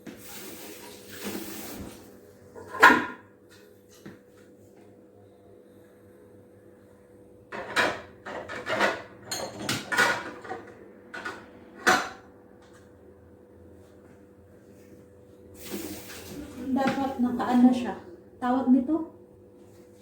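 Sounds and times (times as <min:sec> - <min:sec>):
dishes and dishwasher racks clattering: 0:02.6 - 0:03.2, 0:07.5 - 0:12.3.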